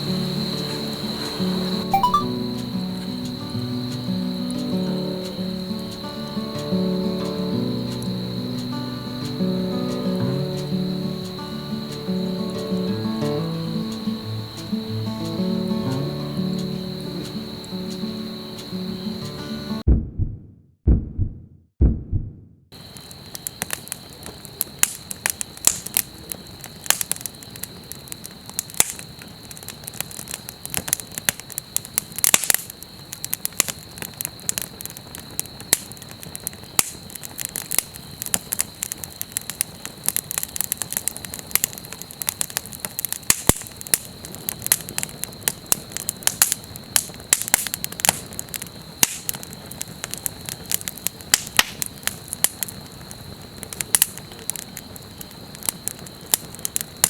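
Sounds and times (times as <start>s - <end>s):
campfire crackling: 0.0s - 19.8s, 22.8s - 57.0s
faint high tone: 1.9s - 2.6s.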